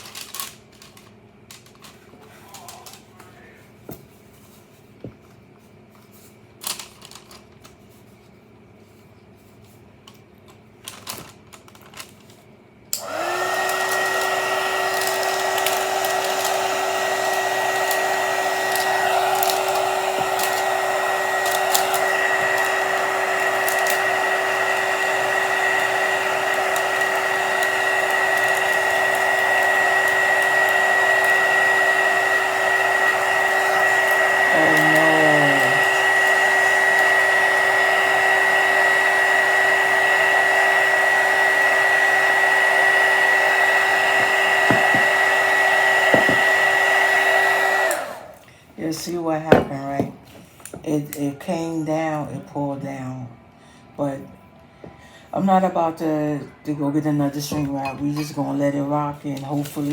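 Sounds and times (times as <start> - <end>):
air blowing: 13.0 - 48.4
heat gun motor whine: 13.0 - 48.4, 49.5 - 50.1.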